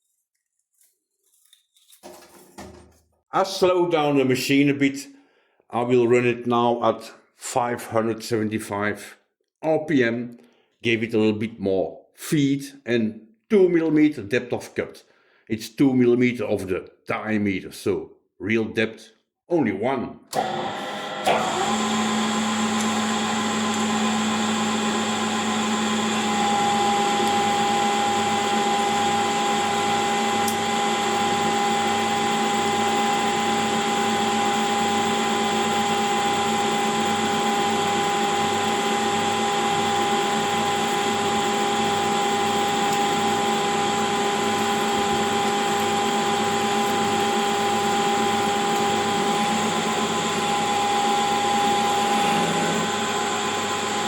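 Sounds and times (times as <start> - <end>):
machine whine: 20.4 - 54.0
metal lathe running: 20.4 - 54.0.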